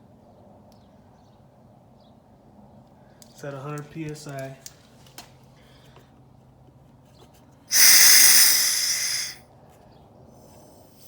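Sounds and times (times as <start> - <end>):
compressed air hissing: 7.7 - 9.4.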